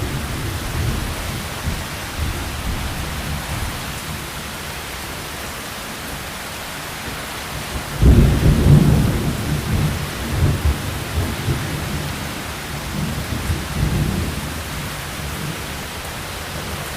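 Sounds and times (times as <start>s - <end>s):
heavy rain hissing: 0.0s - 16.9s
thunder rumble: 8.0s - 12.2s.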